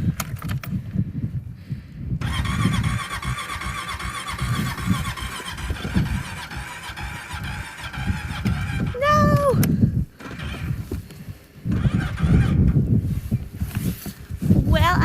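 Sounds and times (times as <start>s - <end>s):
electric starter cranking: 2.2s - 9.2s, 10.1s - 10.9s, 11.7s - 12.8s.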